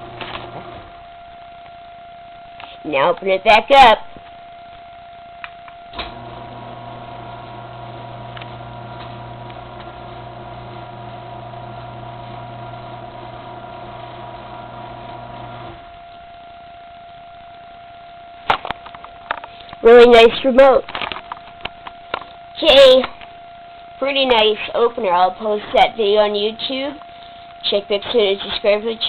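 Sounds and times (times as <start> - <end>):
garage door opener motor humming: 5.9 - 16.5.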